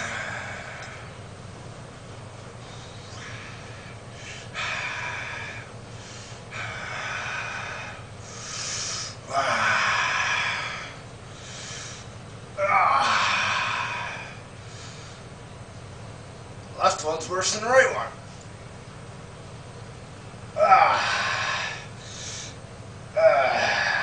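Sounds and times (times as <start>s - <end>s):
man breathing hard: 0.0s - 1.3s, 2.6s - 12.2s, 12.9s - 15.4s, 20.6s - 22.6s.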